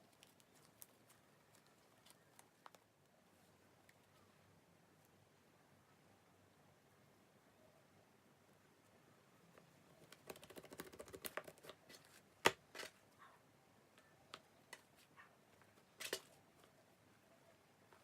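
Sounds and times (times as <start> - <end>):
slime with corn puffs crackling: 0.0 - 3.2.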